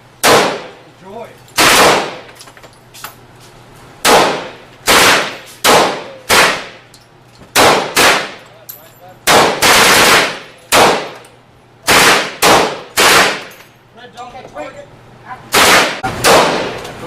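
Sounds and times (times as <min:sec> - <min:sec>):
gunshots with ringing tail: 0:01.6 - 0:02.3, 0:09.3 - 0:11.2, 0:11.8 - 0:13.5, 0:15.5 - 0:16.8.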